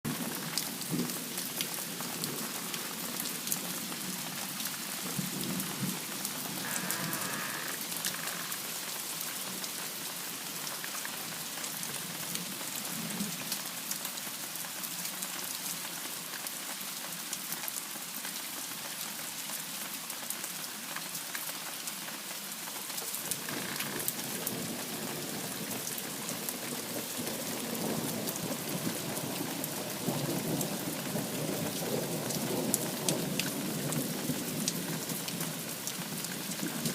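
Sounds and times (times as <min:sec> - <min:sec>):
heavy rain hissing: 0:00.1 - 0:13.4, 0:23.0 - 0:36.9.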